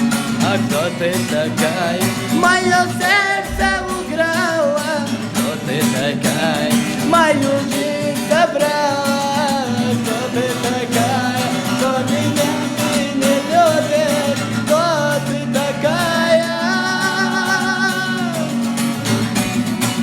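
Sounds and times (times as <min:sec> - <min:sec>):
strummed acoustic guitar: 0:00.0 - 0:20.0
person singing long wavering notes: 0:16.4 - 0:18.4.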